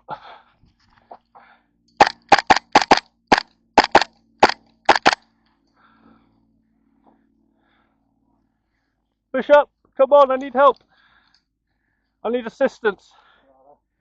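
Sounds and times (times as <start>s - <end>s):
airsoft pistol shots: 2.0s - 5.2s.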